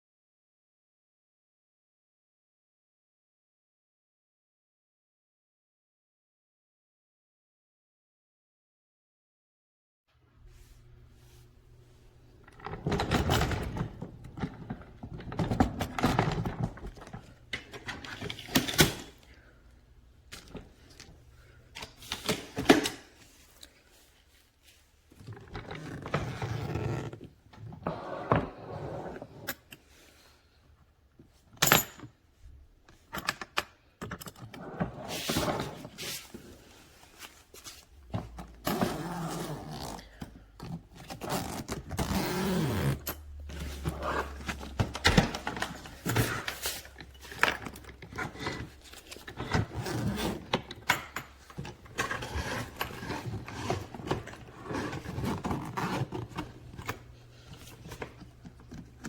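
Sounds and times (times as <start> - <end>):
objects knocking and scraping: 43.2 - 59.0.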